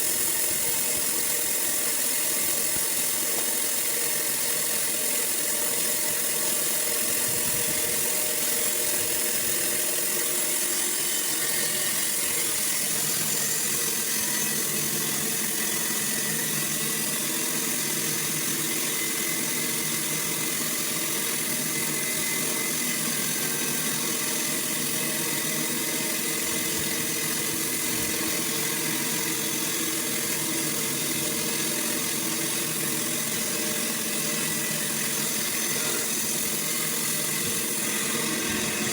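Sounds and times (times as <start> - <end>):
sawmill machinery drone: 0.0 - 38.9.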